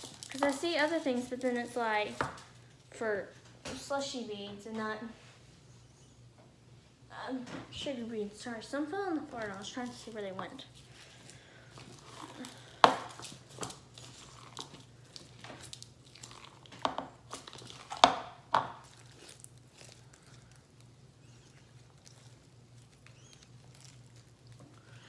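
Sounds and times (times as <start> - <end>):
slime squished with crunchy clicks: 11.8 - 25.0.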